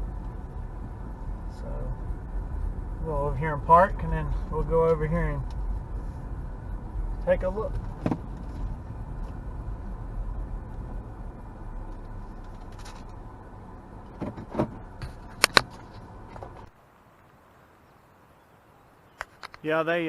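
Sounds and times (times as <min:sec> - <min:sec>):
car engine rumble from cabin: 0:00.0 - 0:16.8
sharp clicks and clunks: 0:14.1 - 0:16.7, 0:19.2 - 0:19.6.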